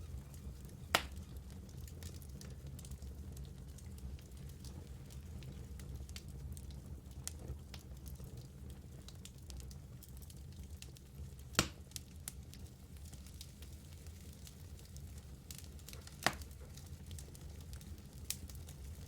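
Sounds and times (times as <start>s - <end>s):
fire crackling: 0.0s - 19.0s
loud sharp pop: 1.0s - 1.2s.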